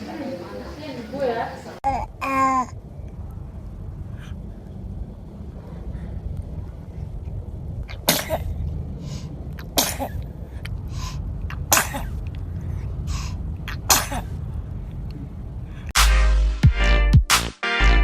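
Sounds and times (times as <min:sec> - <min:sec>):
baby sneezing: 0:07.9 - 0:08.5, 0:09.6 - 0:10.2, 0:13.7 - 0:14.3
baby breathing: 0:10.3 - 0:11.3, 0:12.6 - 0:13.6.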